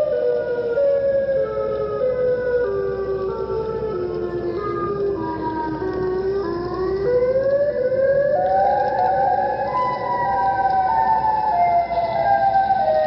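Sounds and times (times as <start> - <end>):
siren-like wailing tone: 0.0 - 13.0.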